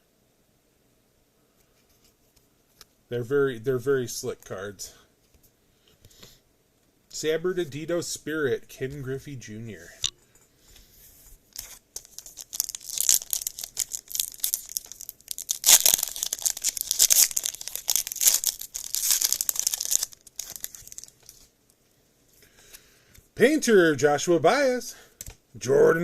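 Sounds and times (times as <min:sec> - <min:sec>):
foil wrapper tearing and crinkling: 0:11.5 - 0:21.5.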